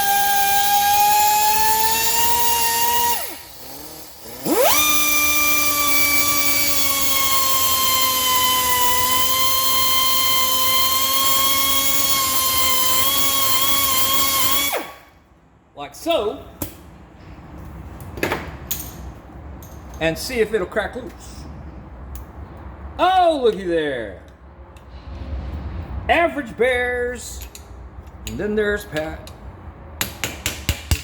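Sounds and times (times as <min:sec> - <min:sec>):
cutoff wheel whining: 0:00.0 - 0:15.1.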